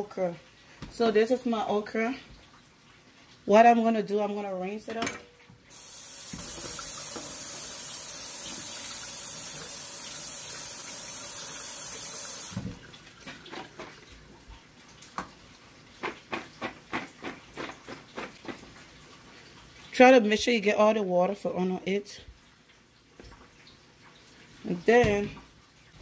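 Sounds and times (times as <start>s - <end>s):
kitchen tap running: 5.6s - 20.5s, 22.4s - 26.0s.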